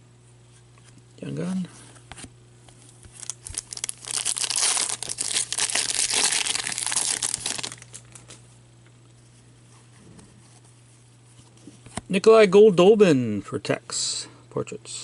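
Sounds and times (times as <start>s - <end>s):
foil wrapper crinkling and tearing: 3.1s - 8.4s.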